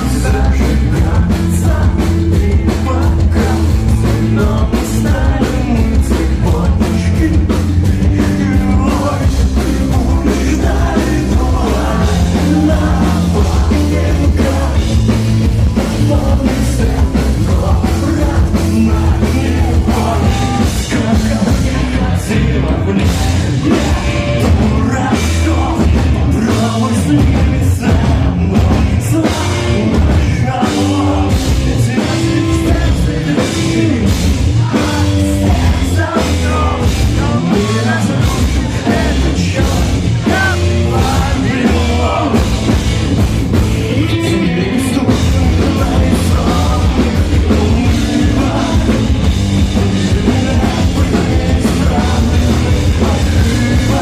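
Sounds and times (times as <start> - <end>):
person singing: 0.0 - 42.6, 43.5 - 54.0
bass guitar: 0.0 - 54.0
distorted electric guitars: 0.0 - 54.0
drums: 0.0 - 54.0.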